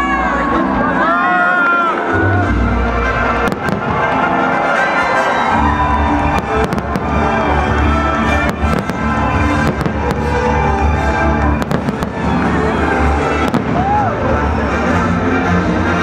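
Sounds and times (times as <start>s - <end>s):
music playing: 0.0s - 16.0s
fireworks bangs and crackles: 2.8s - 14.9s.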